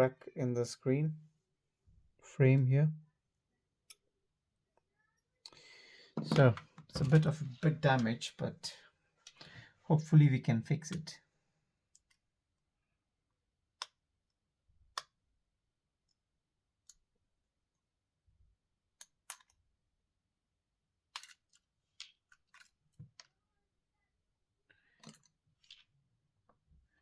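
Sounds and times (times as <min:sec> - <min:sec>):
clicks and taps of repair tools: 0:06.2 - 0:08.1.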